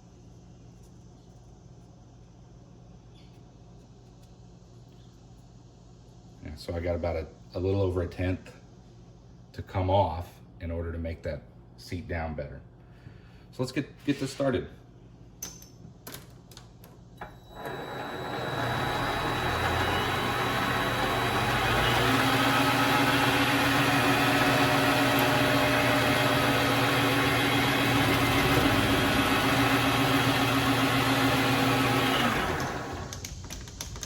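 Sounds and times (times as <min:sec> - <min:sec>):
lathe motor spinning: 0:17.2 - 0:33.6.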